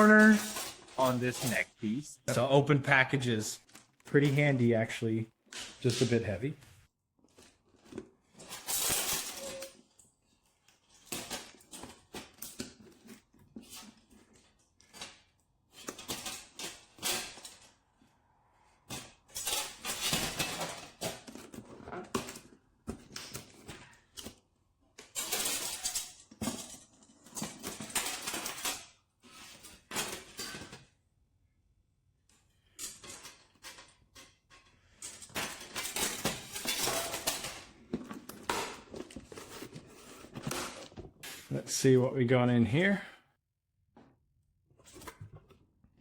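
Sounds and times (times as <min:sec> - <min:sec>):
packaging rustling and crinkling: 0:35.2 - 0:41.2.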